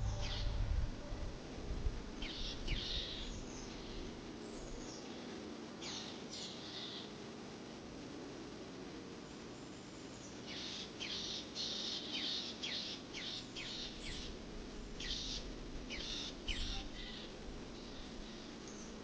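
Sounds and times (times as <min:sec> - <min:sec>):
songbird calling: 0:00.0 - 0:00.8, 0:02.2 - 0:05.0, 0:10.4 - 0:14.4, 0:15.0 - 0:19.0
faint outdoor hiss: 0:00.0 - 0:19.0.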